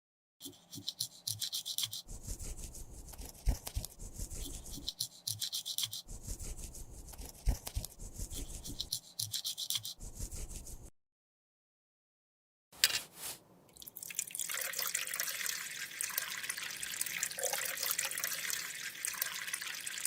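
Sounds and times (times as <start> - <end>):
tool scraping cosmetic product: 0.4 - 10.9.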